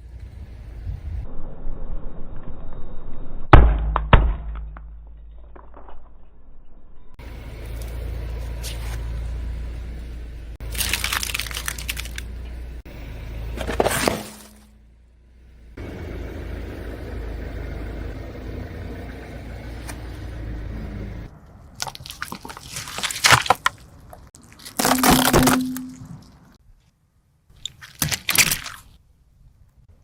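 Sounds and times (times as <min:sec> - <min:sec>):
car engine running low: 0:07.1 - 0:21.6
tyre crushing crunchy objects: 0:10.6 - 0:12.3, 0:13.5 - 0:14.6, 0:21.8 - 0:26.5, 0:27.7 - 0:28.9.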